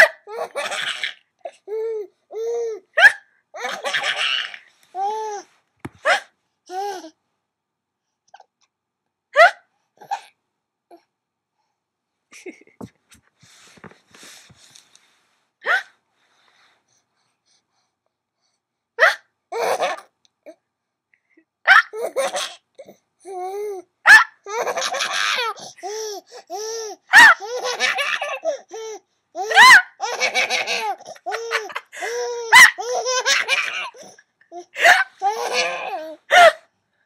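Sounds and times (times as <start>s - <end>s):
baby laughing: 0.0s - 5.4s, 19.5s - 20.1s, 21.7s - 22.7s, 23.4s - 36.5s.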